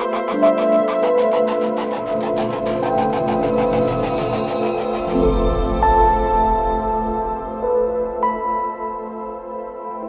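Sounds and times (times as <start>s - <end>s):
ambient music with soft tones: 0.0s - 10.0s
low drone: 1.9s - 8.6s.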